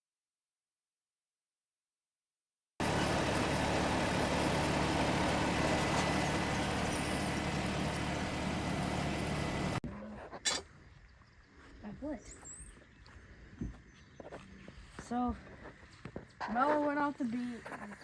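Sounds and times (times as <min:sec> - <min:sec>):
vehicle engine idling: 0:02.8 - 0:09.8.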